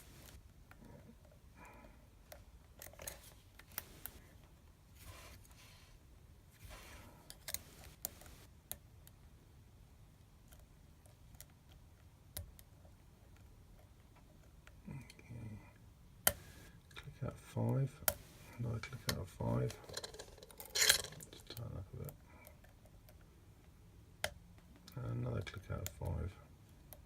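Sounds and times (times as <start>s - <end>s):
lock pick clicking and scraping: 6.8s - 8.5s.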